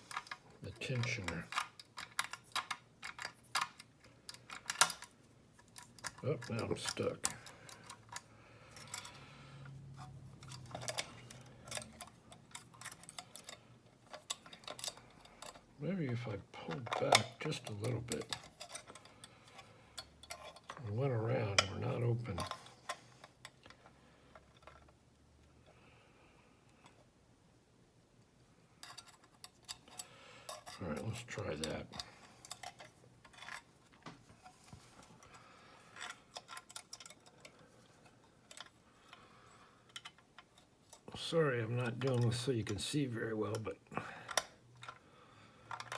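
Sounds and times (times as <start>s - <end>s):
lock pick clicking and scraping: 0.0s - 20.9s, 28.8s - 33.7s, 34.5s - 39.2s, 45.7s - 45.9s.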